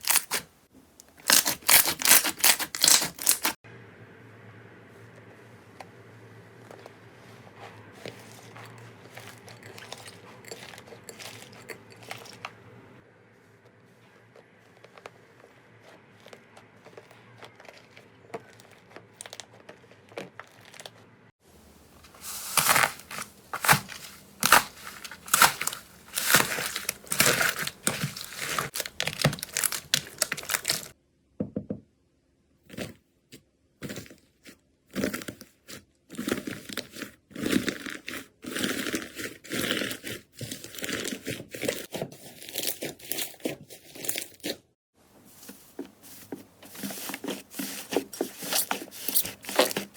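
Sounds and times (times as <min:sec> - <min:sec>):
slime crackling and popping: 0:01.2 - 0:03.6, 0:22.2 - 0:31.0.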